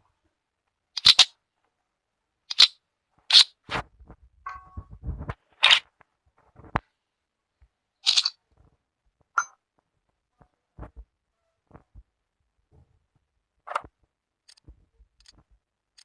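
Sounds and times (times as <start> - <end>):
rifle parts rattling: 8.0 - 8.4.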